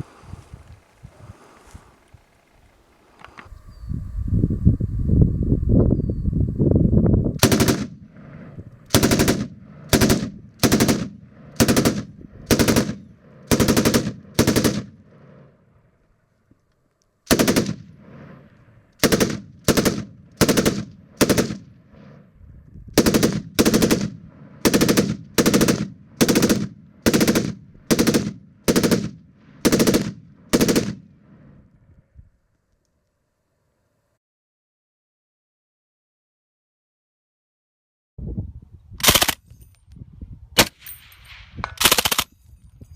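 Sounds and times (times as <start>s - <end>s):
machine gun firing bursts: 7.4s - 8.1s, 8.9s - 15.1s, 17.3s - 18.3s, 19.0s - 21.7s, 23.0s - 31.1s, 41.8s - 42.3s.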